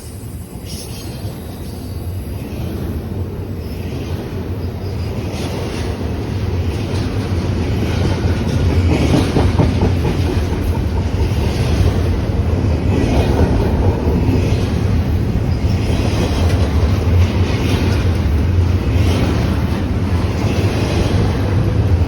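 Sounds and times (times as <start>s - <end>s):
freight train rumbling: 0.0s - 22.0s
wheels clattering over rail joints: 5.4s - 22.0s.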